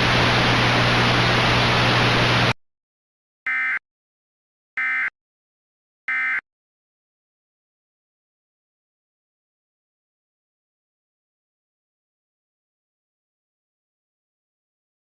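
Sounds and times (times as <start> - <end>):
radio static hiss: 0.0 - 2.5.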